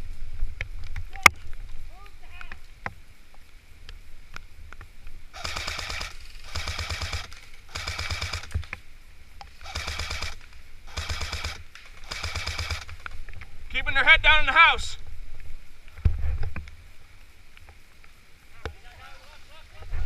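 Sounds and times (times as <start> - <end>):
airsoft gun firing bursts: 5.4 - 8.6, 9.6 - 13.0.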